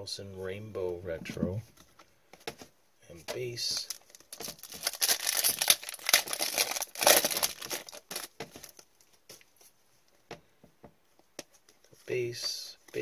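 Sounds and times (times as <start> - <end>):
foil wrapper crinkling and tearing: 3.7 - 8.8.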